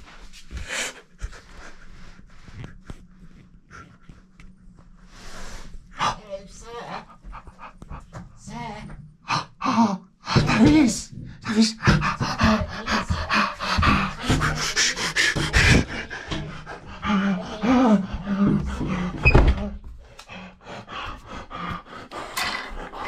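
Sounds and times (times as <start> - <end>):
man panting: 0.5 - 2.9, 9.3 - 19.3, 20.1 - 23.0.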